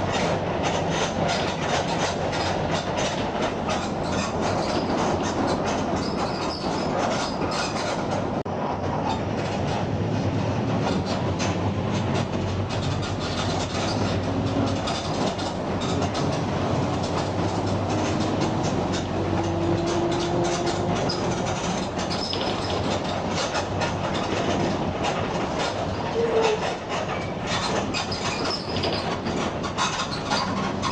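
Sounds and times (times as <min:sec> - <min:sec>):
bus engine drone: 0:00.0 - 0:26.2
rattling and knocking: 0:10.6 - 0:30.9.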